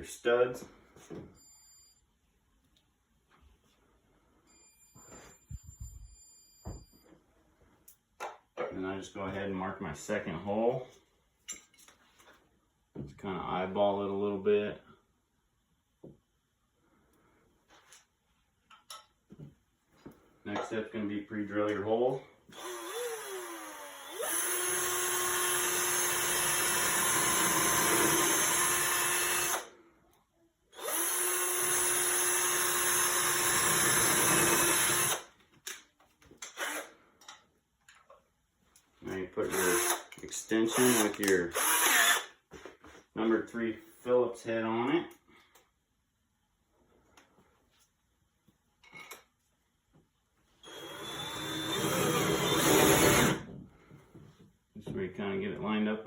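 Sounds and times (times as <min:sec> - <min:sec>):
power drill running: 0:22.5 - 0:29.7, 0:30.8 - 0:35.3, 0:36.5 - 0:36.9, 0:39.5 - 0:40.1, 0:40.7 - 0:42.3, 0:50.6 - 0:53.4.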